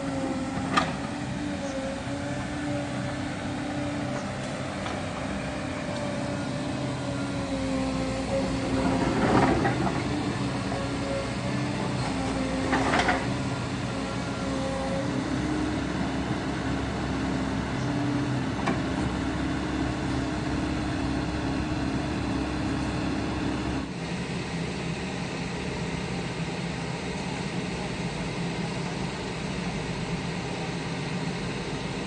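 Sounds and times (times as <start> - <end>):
excavator diesel engine: 0.0 - 32.0.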